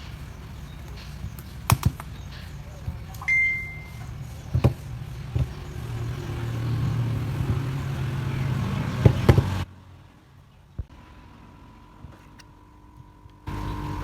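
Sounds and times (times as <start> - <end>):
sharp clicks: 0.0 - 2.5
low machine hum: 0.0 - 9.6, 10.9 - 14.0.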